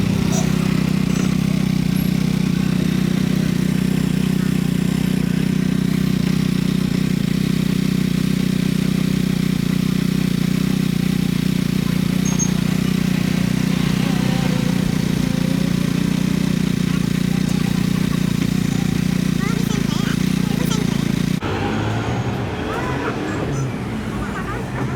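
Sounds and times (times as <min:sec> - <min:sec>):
motorcycle engine idling: 0:00.0 - 0:24.9.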